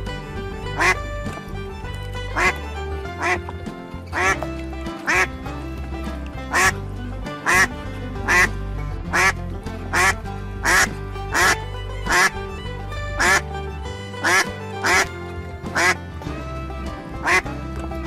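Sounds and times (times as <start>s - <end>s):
duck quacking: 0.0s - 16.0s, 17.1s - 17.6s
background music: 0.0s - 18.0s.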